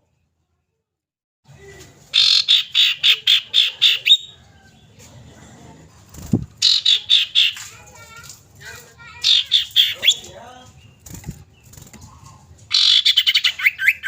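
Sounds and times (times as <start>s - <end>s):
bird harsh call notes: 2.1s - 4.3s, 6.6s - 7.7s, 9.2s - 10.3s, 12.7s - 14.0s.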